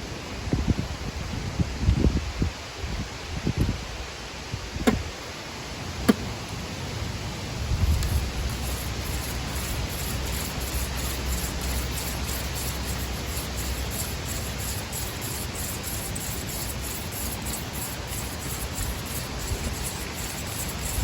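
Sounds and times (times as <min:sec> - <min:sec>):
wind on microphone: 0:00.3 - 0:05.2, 0:07.4 - 0:21.0
palms rubbing hand-drill spindle: 0:07.9 - 0:21.0.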